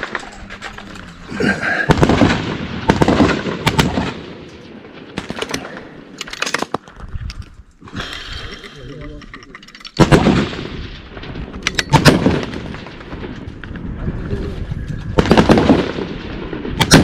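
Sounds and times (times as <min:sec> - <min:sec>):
gunshots: 0:00.0 - 0:06.8, 0:09.9 - 0:13.6, 0:15.1 - 0:17.0.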